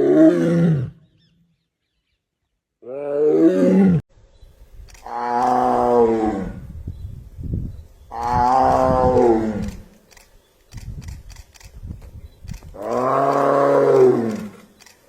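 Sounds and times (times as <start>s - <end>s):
tiger roaring: 2.8s - 4.0s, 5.0s - 6.6s, 12.8s - 14.7s.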